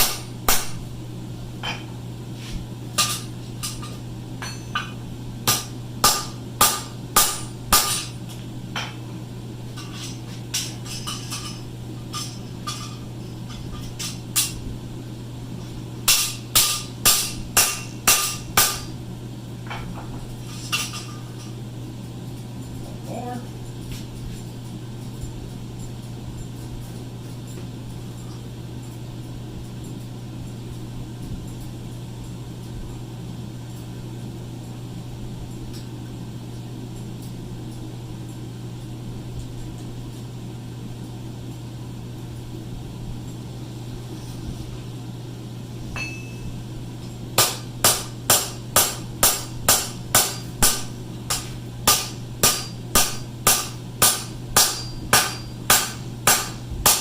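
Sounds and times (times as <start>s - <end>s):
steady low hum: 0.0s - 57.0s
hammer ringing on anvil: 16.1s - 18.9s, 46.0s - 46.6s, 47.4s - 57.0s.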